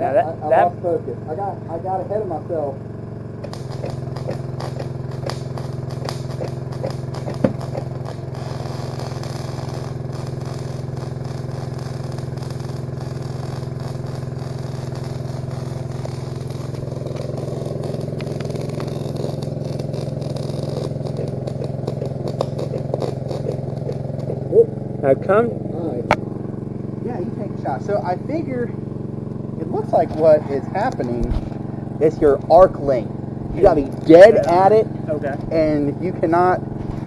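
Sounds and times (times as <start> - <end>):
welder engine running: 0.0 - 37.0
welding arc crackling: 1.8 - 25.0, 25.9 - 37.0
sharp welding pop: 3.4 - 24.5.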